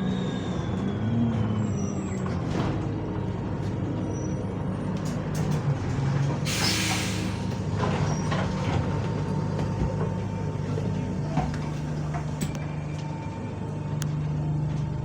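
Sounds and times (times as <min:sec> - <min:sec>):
bus diesel engine running: 0:00.0 - 0:15.0
air brake blast: 0:06.5 - 0:07.5.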